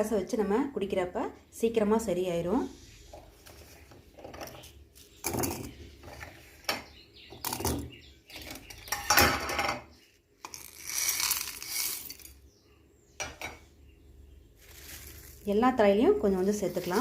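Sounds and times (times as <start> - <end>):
dishes clinking and knocking: 5.2 - 9.9, 13.2 - 13.6
rustle: 14.6 - 15.6.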